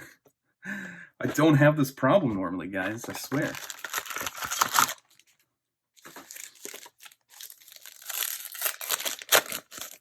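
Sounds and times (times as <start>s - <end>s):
foil wrapper crinkling and tearing: 3.0s - 5.3s, 6.0s - 10.0s.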